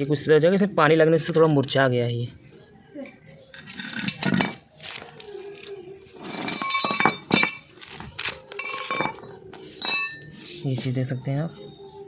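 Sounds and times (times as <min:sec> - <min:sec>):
metal tools clinking: 0:03.5 - 0:04.7, 0:05.6 - 0:10.6.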